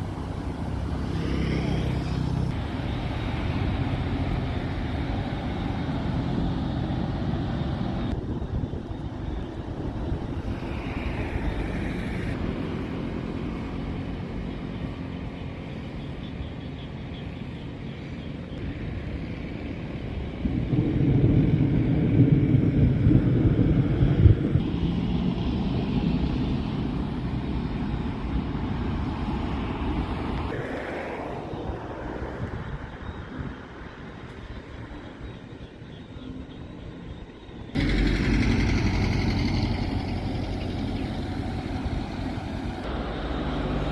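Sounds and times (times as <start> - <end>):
heavy vehicle engines running: 0.0 - 43.9.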